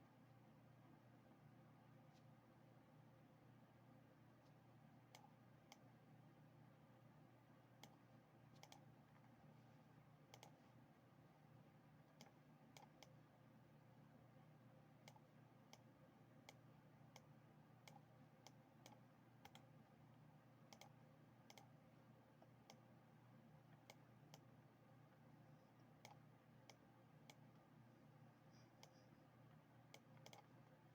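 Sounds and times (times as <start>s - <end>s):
low electrical hum: 0.0s - 30.9s
computer mouse clicks: 5.1s - 5.9s, 7.8s - 8.0s, 8.6s - 9.3s, 10.3s - 10.6s, 12.1s - 13.2s, 15.0s - 19.7s, 20.7s - 21.8s, 22.4s - 22.9s, 23.7s - 24.6s, 25.8s - 27.5s, 29.8s - 30.8s.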